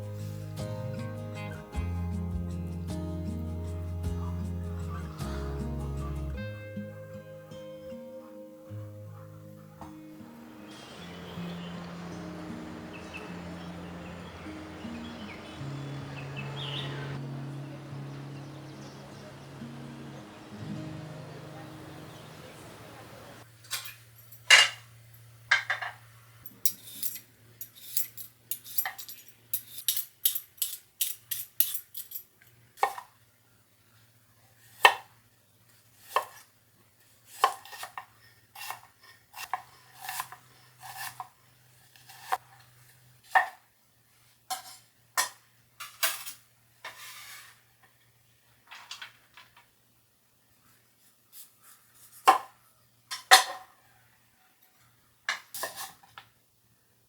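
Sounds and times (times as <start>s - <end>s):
kitchen utensils clinking: 23.7s - 24.9s, 25.5s - 32.5s.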